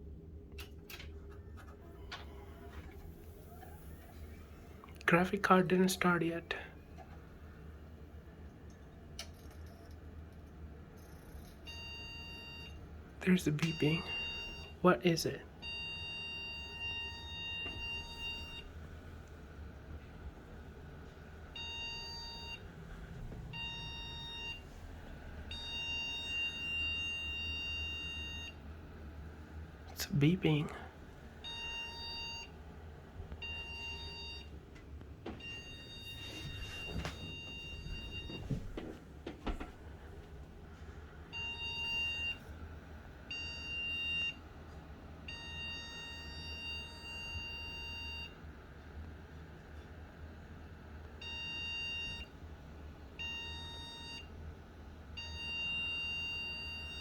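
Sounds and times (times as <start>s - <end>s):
low fan hum: 0.0s - 55.6s
low hum: 16.8s - 41.5s.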